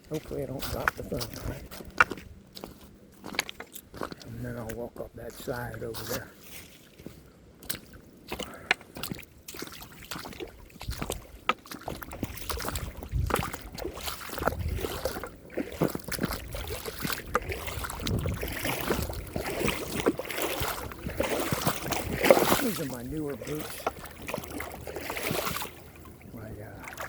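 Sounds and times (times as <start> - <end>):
water sloshing and splashing: 0.0 - 4.8, 5.4 - 27.0
boots thudding and clicking: 7.0 - 25.8.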